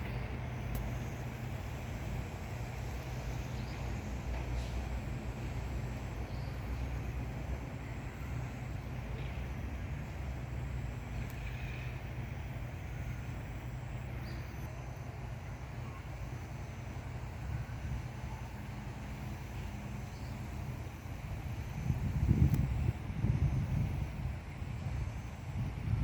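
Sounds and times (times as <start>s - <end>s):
low outdoor rumble with hiss: 0.0s - 26.0s.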